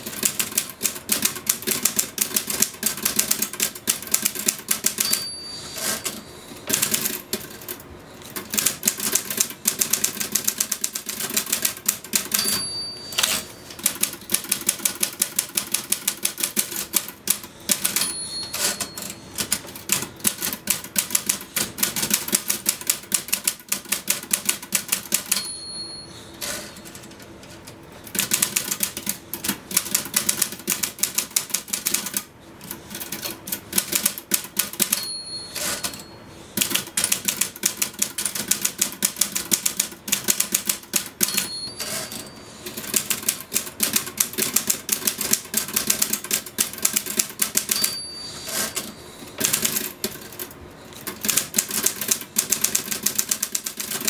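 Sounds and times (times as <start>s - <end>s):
typewriter keystrokes: 0.0s - 25.5s, 26.4s - 36.0s, 36.6s - 54.0s
typewriter bell ding: 4.7s - 6.2s, 12.1s - 13.7s, 17.7s - 19.6s, 25.1s - 27.1s, 34.7s - 36.2s, 41.0s - 42.6s, 47.3s - 49.6s.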